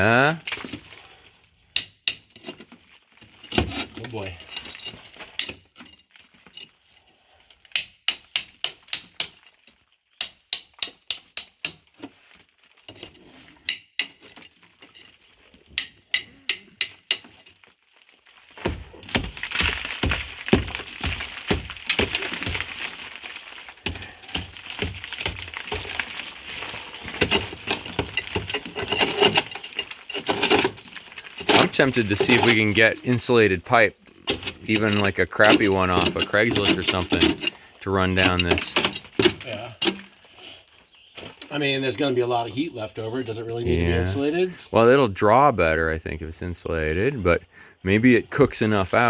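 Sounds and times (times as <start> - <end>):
earth scraping and crumbling: 0.0 - 10.2, 11.3 - 49.0
hammer striking earth wall: 1.7 - 2.4, 7.7 - 9.4, 10.2 - 12.0, 15.7 - 17.4, 18.6 - 29.6.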